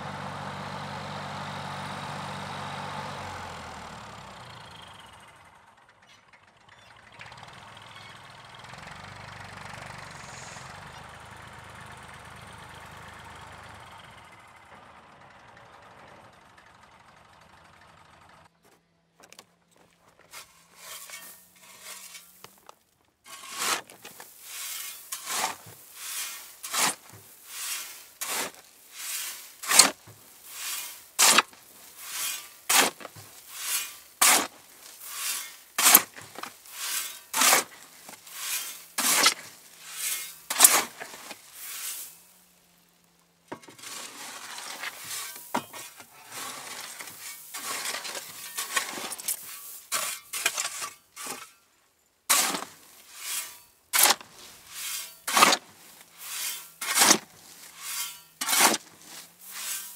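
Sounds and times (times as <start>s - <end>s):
engine running: 0.0s - 19.8s
tool scraping gritty material: 19.3s - 42.4s, 43.5s - 59.9s.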